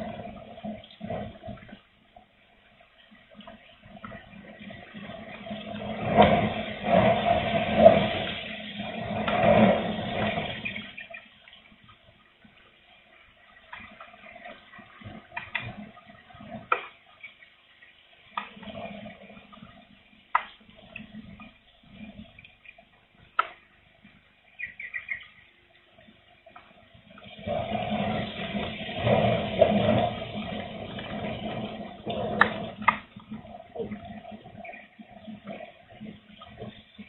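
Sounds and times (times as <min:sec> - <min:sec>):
raindrops ticking close by: 0:28.2 - 0:37.0.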